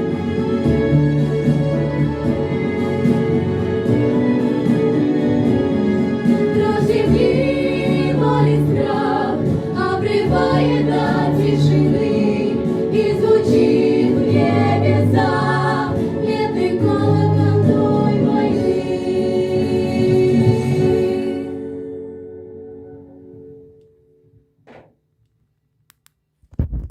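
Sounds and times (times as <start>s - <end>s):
instrumental backing track: 0.0s - 24.9s
choir singing in harmony: 3.4s - 22.6s.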